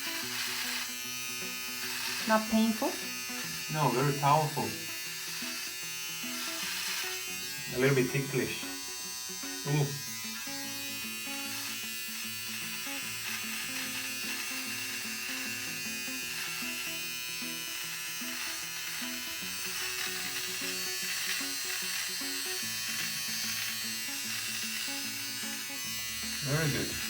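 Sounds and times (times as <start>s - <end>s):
hair trimmer buzzing: 0.0s - 27.0s.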